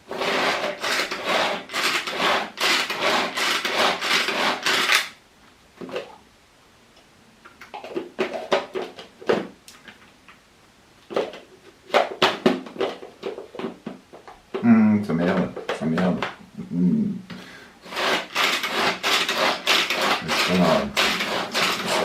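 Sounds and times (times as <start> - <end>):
kitchen chopper mincing: 0.0 - 5.1, 17.8 - 22.0.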